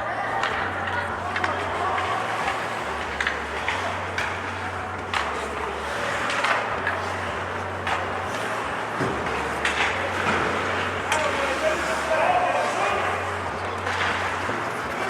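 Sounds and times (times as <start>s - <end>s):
skates scraping on ice: 0.0s - 14.9s
low arena hum: 0.0s - 15.0s
hockey sticks and puck knocking: 0.1s - 11.7s.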